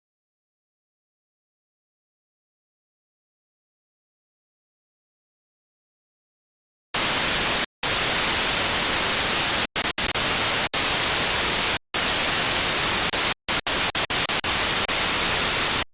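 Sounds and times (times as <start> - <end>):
loud static hiss: 7.0 - 15.9.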